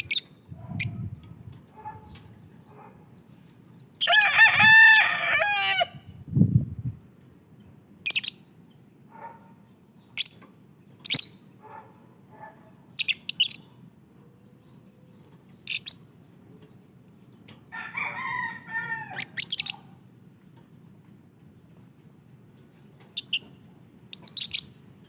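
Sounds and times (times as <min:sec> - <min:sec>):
birds chirping shrilly: 0:18.2 - 0:20.0
birds chattering: 0:19.2 - 0:20.1.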